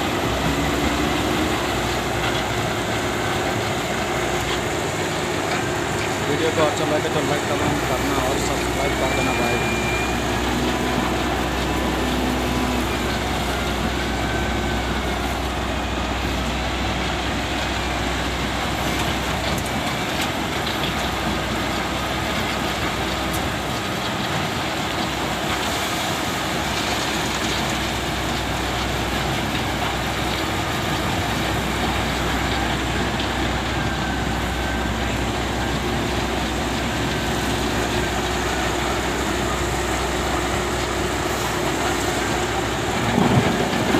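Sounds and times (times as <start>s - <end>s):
excavator diesel engine droning: 0.0s - 43.9s.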